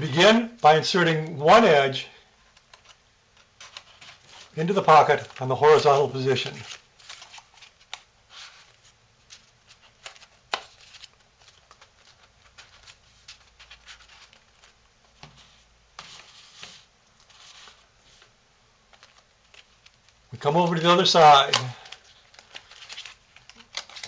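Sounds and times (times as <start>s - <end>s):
paper rustling and crinkling: 2.3s - 24.0s
small paper clicks: 2.5s - 4.6s, 6.5s - 15.4s, 18.9s - 20.8s, 21.4s - 24.0s.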